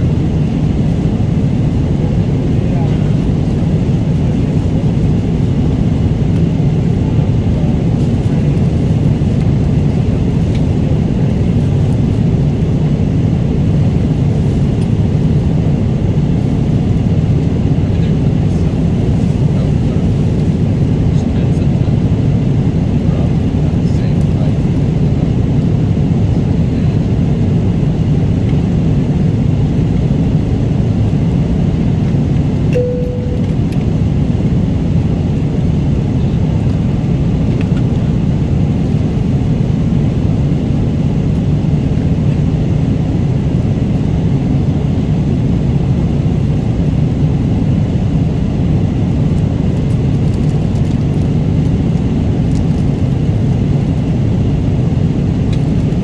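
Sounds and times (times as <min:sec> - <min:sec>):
airliner cabin rumble: 0:00.0 - 0:56.0
cabin chime tone: 0:32.7 - 0:33.8.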